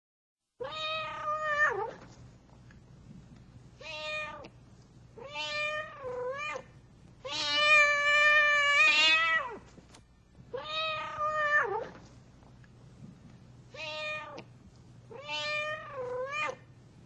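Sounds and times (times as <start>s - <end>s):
cat meowing: 0.6s - 2.0s, 3.8s - 4.5s, 5.2s - 9.6s, 10.5s - 12.0s, 13.7s - 14.5s, 15.1s - 16.7s.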